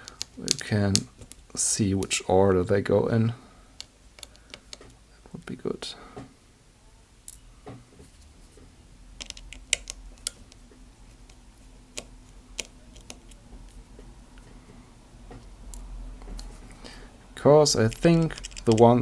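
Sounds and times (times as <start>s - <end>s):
small screws clicking: 0.0s - 1.0s, 9.2s - 10.6s, 17.8s - 19.0s
faint steady hum: 0.0s - 19.0s.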